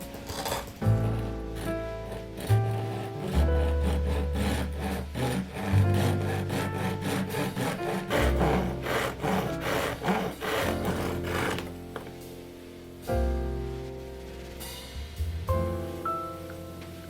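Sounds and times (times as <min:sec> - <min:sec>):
hand tool strokes on wood: 0:00.0 - 0:12.4
background music: 0:00.0 - 0:17.0.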